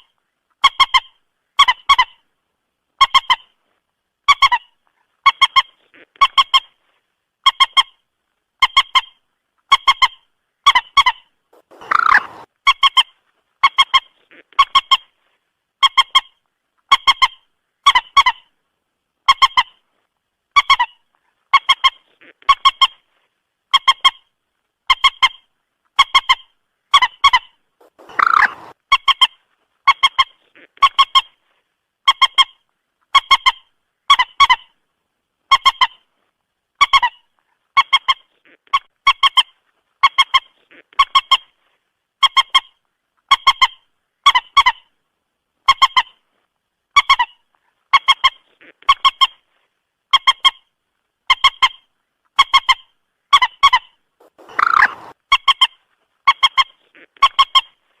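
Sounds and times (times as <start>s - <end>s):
moorhen calling: 8.6s - 15.1s, 26.0s - 29.3s, 52.4s - 55.7s.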